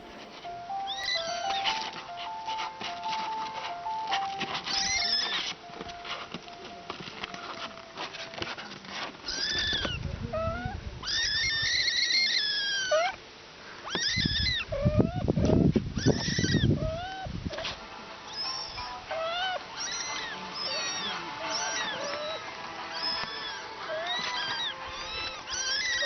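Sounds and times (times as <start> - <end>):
cats meowing: 0.0 - 5.9, 7.0 - 13.2, 13.8 - 26.0
rough scuffling noise: 0.0 - 10.2, 15.4 - 26.0.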